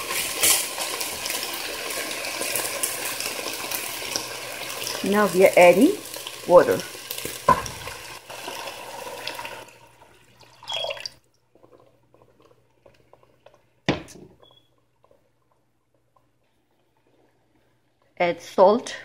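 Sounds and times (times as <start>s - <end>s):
water splashing and hissing in hot pan: 0.0s - 11.1s.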